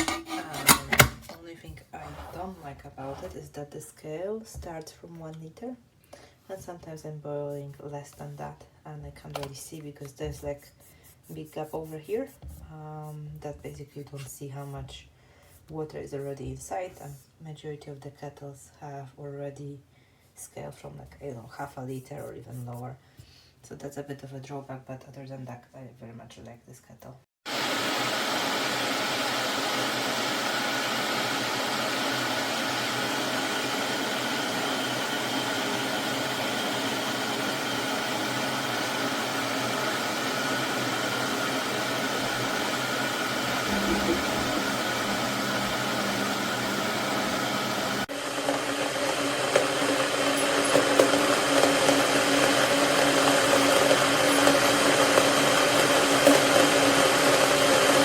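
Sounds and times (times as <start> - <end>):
electric kettle heating water: 0.0 - 1.3, 27.5 - 58.0.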